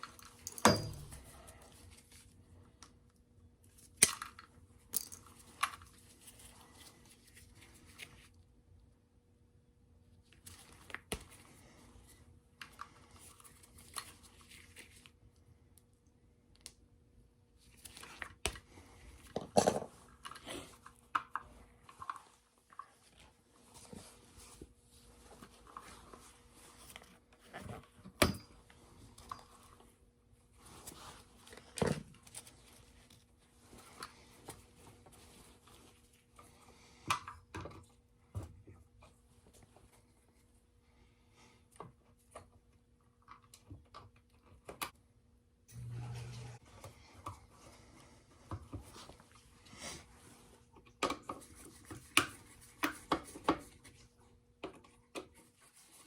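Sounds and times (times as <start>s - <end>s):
faint steady hum: 0.0s - 55.3s.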